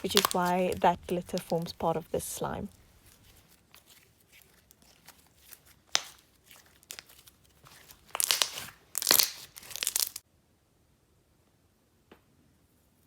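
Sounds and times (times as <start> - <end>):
slime squishing with small pops: 0.0 - 1.5, 4.4 - 10.2.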